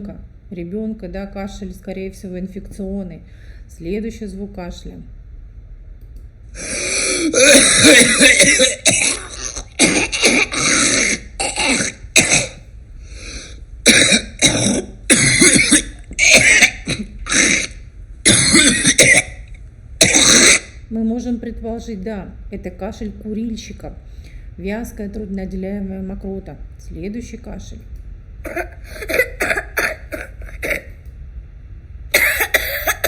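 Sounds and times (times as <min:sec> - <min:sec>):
person coughing: 0:06.6 - 0:12.6, 0:13.2 - 0:20.8, 0:28.4 - 0:31.0, 0:32.2 - 0:33.0.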